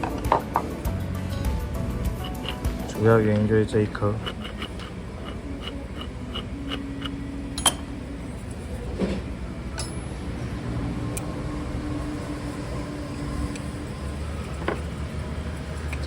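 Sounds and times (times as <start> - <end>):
light metal clicking: 1.5 - 3.5, 4.1 - 7.9.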